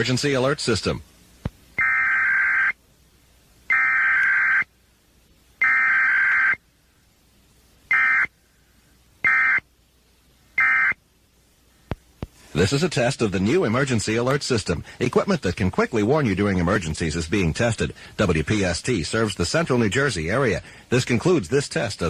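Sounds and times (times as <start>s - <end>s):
digital data bursts over radio: 1.8s - 2.8s, 3.7s - 4.7s, 5.6s - 6.6s, 7.9s - 8.3s, 9.2s - 9.6s.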